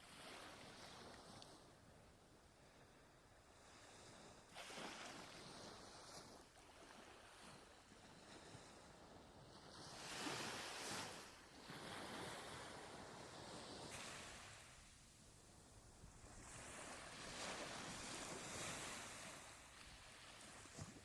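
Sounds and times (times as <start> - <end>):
sea waves washing: 16.0 - 21.0.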